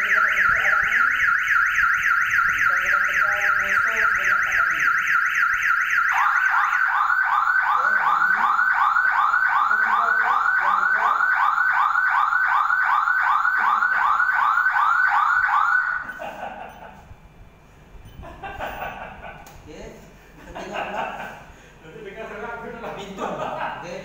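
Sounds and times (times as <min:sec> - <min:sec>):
burglar alarm siren: 0:00.0 - 0:16.2.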